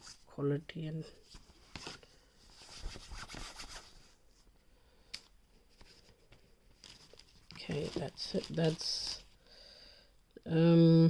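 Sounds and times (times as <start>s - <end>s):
hands rubbing fabric: 2.5s - 4.1s.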